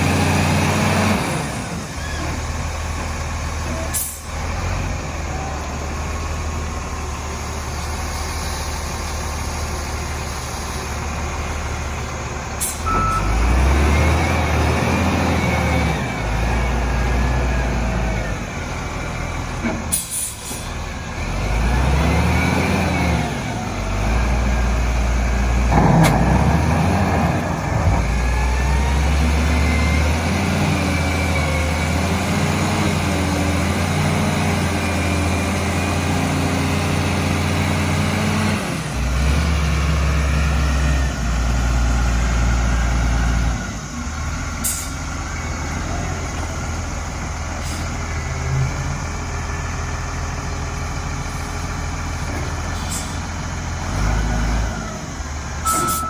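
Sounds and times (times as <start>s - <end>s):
diesel engine revving: 0.0s - 56.0s.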